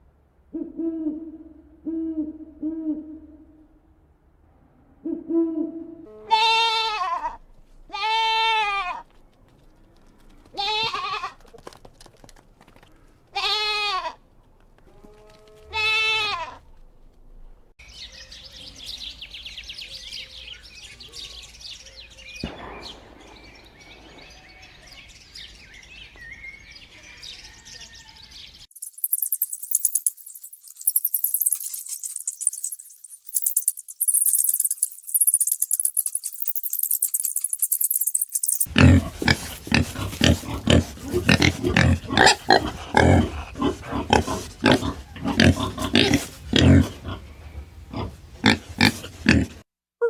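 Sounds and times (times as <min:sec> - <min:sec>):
goat bleating: 0:06.1 - 0:09.1, 0:10.6 - 0:11.5, 0:13.4 - 0:14.2, 0:14.9 - 0:16.6
dense high chattering: 0:22.4 - 0:25.0, 0:28.7 - 0:49.5.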